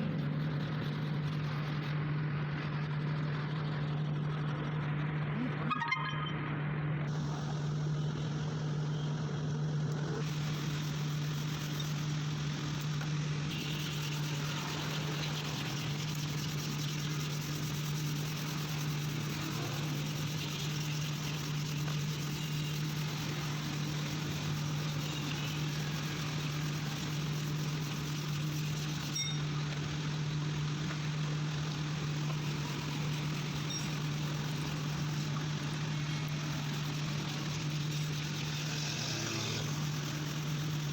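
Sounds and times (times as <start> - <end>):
small motor humming: 7.1 - 40.9
hiss: 10.0 - 40.9.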